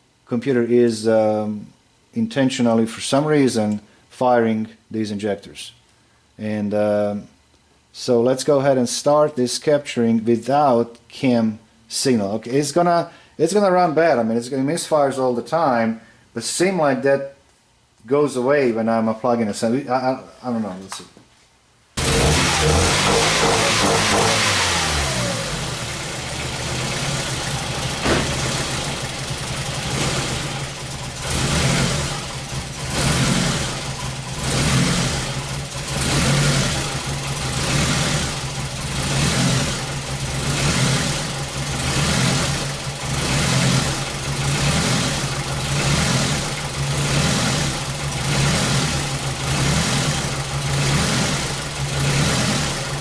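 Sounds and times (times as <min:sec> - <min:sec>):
car engine misfiring: 0:22.0 - 0:53.0.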